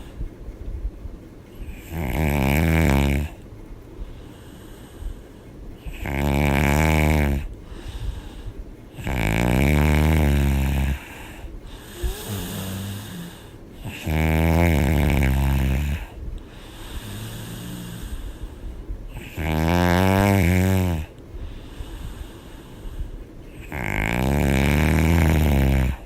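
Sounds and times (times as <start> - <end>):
quiet breathing: 0.0 - 26.0
woman snoring loudly: 1.6 - 3.4, 5.8 - 7.6, 8.9 - 18.2, 19.1 - 21.2, 23.5 - 26.0.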